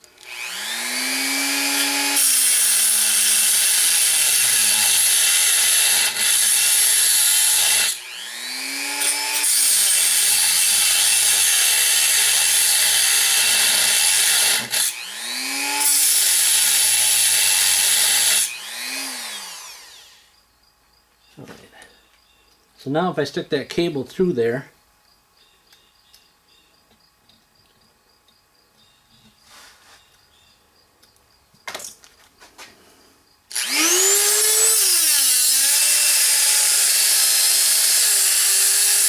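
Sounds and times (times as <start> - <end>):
power grinder cutting steel cable: 0.0 - 20.3, 33.5 - 39.0.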